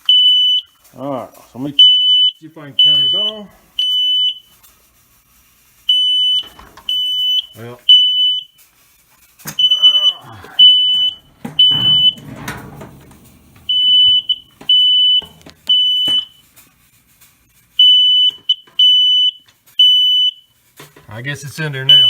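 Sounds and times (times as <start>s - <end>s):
smoke detector beeping: 0.0s - 0.9s, 1.6s - 4.8s, 5.8s - 8.7s, 9.5s - 16.6s, 17.8s - 20.6s
rustling and clattering handling: 6.3s - 7.7s, 8.6s - 19.8s.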